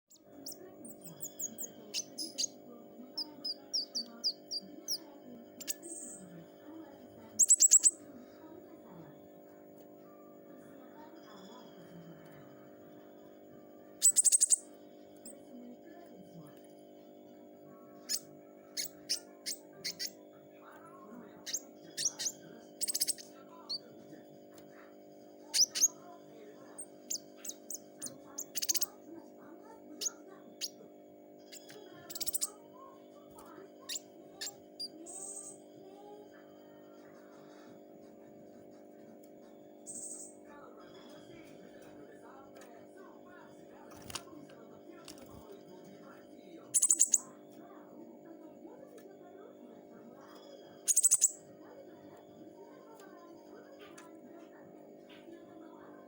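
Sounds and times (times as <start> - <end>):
bird chirping: 0.0 - 6.4, 7.4 - 8.1, 14.0 - 15.4, 18.0 - 23.9, 25.5 - 29.0, 30.0 - 30.8, 31.4 - 32.7, 33.4 - 35.6, 39.8 - 41.3, 46.4 - 47.3, 50.3 - 51.4
songbird chirping: 0.0 - 9.2, 9.8 - 37.8, 39.2 - 56.0
steady low hum: 0.0 - 55.1.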